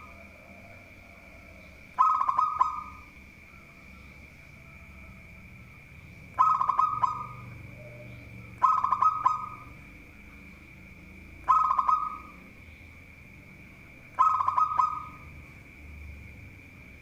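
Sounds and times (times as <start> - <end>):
dove cooing: 0.0 - 3.2, 6.3 - 9.9, 11.4 - 12.6, 14.1 - 15.4.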